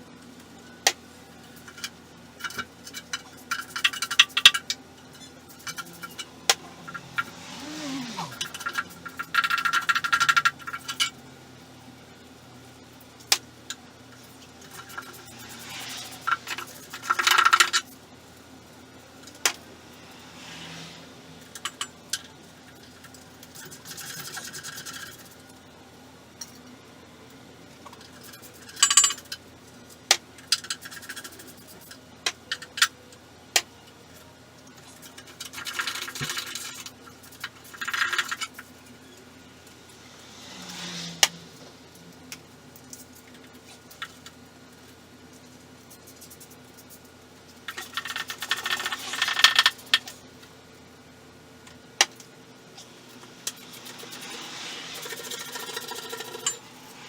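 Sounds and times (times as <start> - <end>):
steady low hum: 0.0 - 57.0
metal scraping rattles: 53.4 - 57.0.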